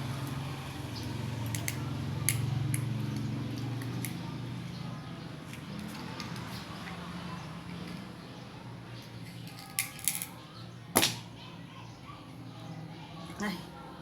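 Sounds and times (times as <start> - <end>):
shellfish shell clicking: 1.5 - 2.9.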